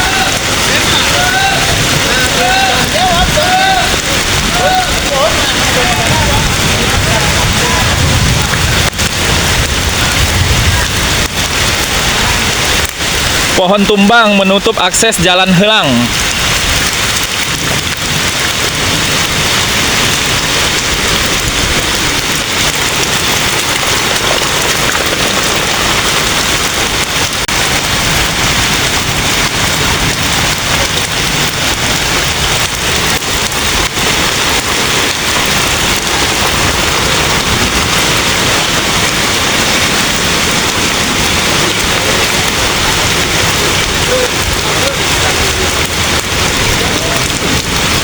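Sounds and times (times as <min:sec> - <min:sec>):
heavy rain: 0:00.0 - 0:48.0.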